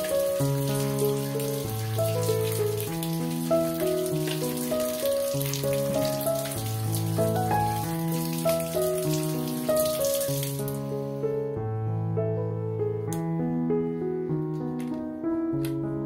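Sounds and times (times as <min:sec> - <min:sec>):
light pattering rain: 0:00.0 - 0:10.9
gentle background music: 0:00.0 - 0:16.0.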